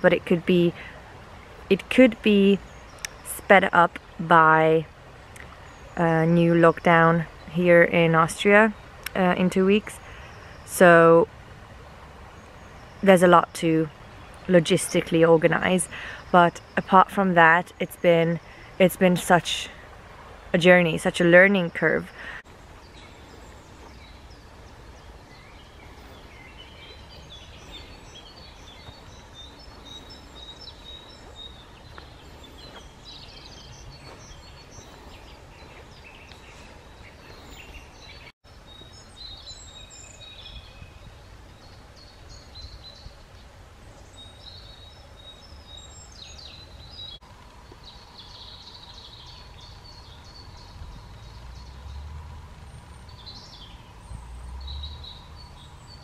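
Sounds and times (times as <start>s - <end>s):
songbirds chirping: 0.0s - 56.0s
low outdoor rumble: 46.8s - 56.0s.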